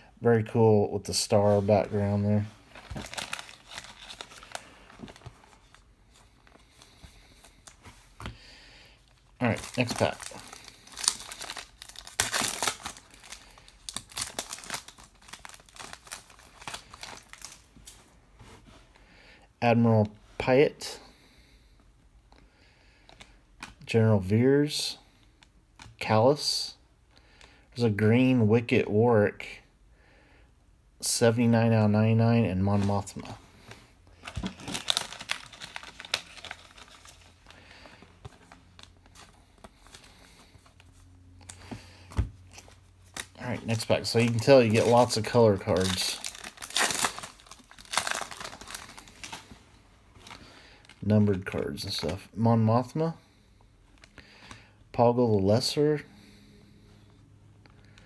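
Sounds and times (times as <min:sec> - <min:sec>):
wrapper crinkling: 0:02.6 - 0:07.8, 0:09.4 - 0:18.0, 0:34.2 - 0:40.9, 0:42.5 - 0:51.4
wrapper tearing open: 0:02.8 - 0:04.7, 0:09.5 - 0:17.7, 0:34.2 - 0:37.5, 0:42.5 - 0:49.4.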